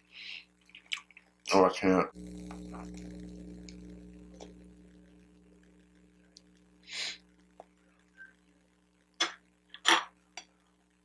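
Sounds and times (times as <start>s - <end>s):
faint steady hum: 0.0s - 11.0s
wet eating noises: 0.6s - 1.4s.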